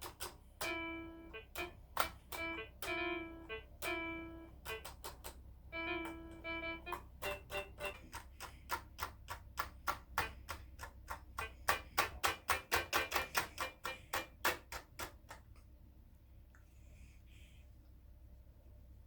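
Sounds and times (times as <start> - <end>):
keyboard key clicks: 0.0 - 3.0, 3.8 - 15.2
brief keyboard notes: 5.8 - 8.0.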